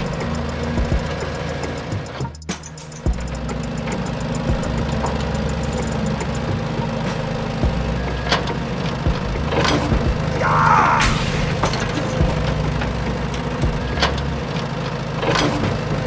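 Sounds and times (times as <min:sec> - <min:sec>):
engine idling: 0:00.0 - 0:16.0
sharp knock: 0:11.0 - 0:13.0.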